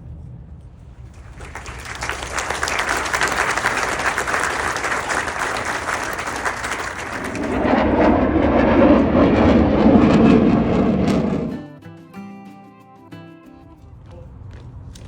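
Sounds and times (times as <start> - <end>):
low rumble: 0.0 - 11.7
audience applauding: 1.1 - 8.5.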